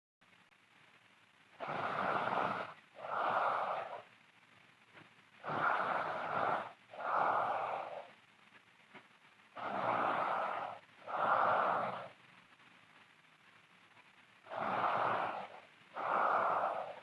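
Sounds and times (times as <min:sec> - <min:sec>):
woman snoring loudly: 0:01.6 - 0:04.0, 0:05.4 - 0:08.1, 0:09.6 - 0:12.1, 0:14.5 - 0:17.0.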